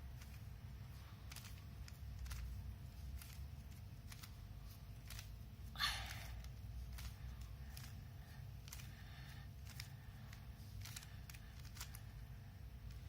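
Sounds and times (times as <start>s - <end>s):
low steady hum: 0.0s - 13.0s
puzzle cube layers clicking: 10.8s - 12.2s.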